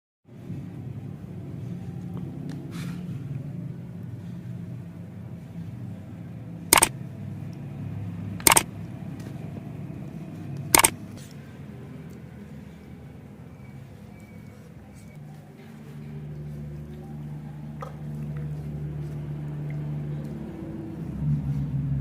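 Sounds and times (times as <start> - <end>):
sharp clacks: 8.4 - 8.6.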